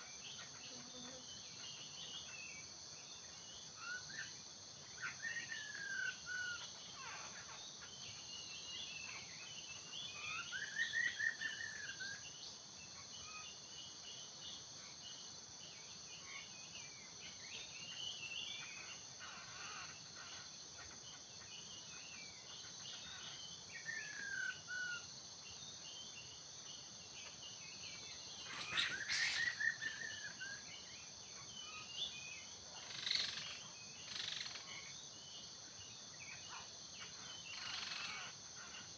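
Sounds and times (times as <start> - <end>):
insects droning: 0.0 - 38.9
bird calls: 3.2 - 12.4, 16.2 - 26.4, 27.1 - 38.9
bird whistling song: 28.4 - 30.6.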